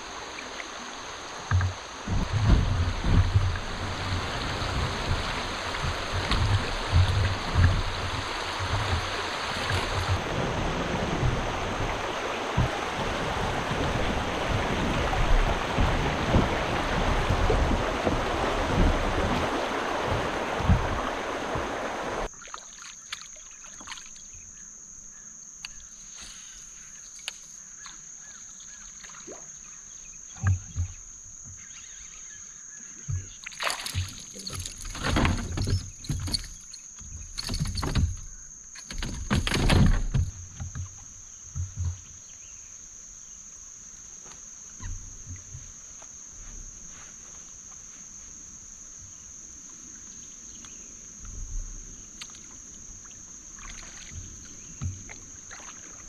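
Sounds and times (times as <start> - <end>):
loud rushing water noise: 0.0 - 22.3
knocks and clicks against kayak: 1.4 - 22.2, 25.6 - 25.9, 27.0 - 28.0, 30.3 - 32.0, 32.9 - 42.5, 44.3 - 46.1, 53.7 - 55.8.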